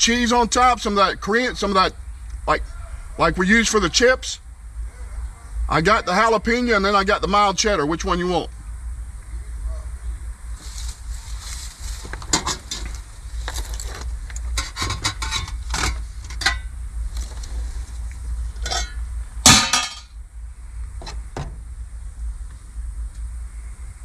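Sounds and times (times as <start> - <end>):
utensils clinking on containers: 14.6 - 16.6, 18.6 - 20.0.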